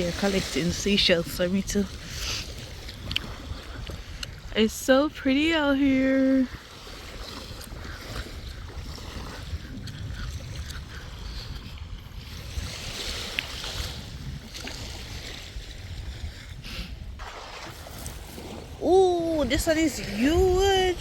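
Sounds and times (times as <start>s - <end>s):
wind buffeting microphone: 0.0s - 21.0s
soft surf: 11.4s - 21.0s.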